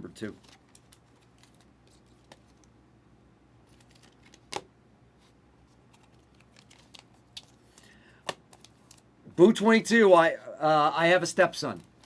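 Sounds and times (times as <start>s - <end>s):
trading cards clicking and rustling: 0.3s - 2.7s, 3.7s - 4.7s, 5.9s - 9.1s.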